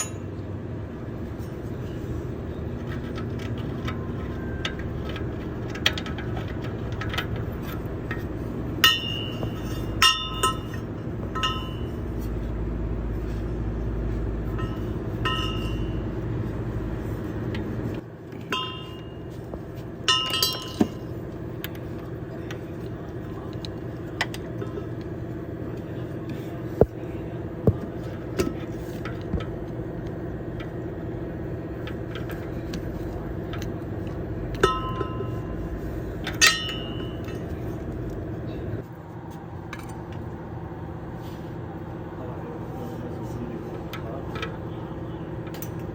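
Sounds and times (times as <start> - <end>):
mechanical hum: 0.0 - 45.9
metal tools clinking: 2.7 - 12.4, 14.5 - 16.3, 17.0 - 25.0, 31.8 - 38.2.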